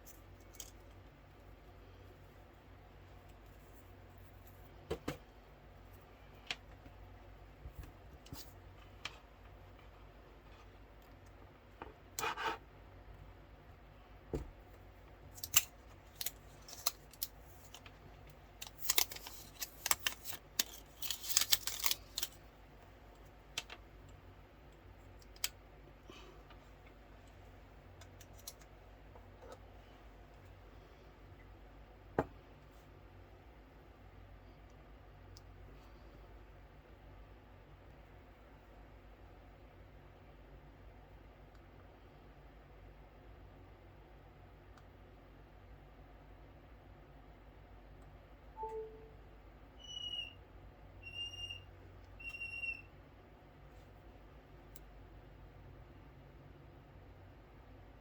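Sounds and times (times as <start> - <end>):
packaging rustle: 18.6 - 22.4.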